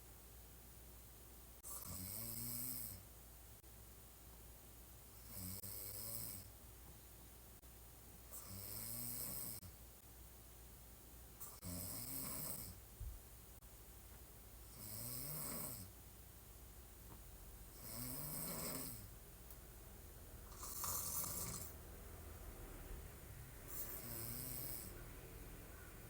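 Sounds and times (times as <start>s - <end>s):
woman snoring: 1.7s - 3.0s, 8.4s - 9.7s, 11.5s - 12.8s, 14.7s - 15.9s, 17.8s - 19.1s, 20.4s - 21.8s, 23.7s - 25.1s.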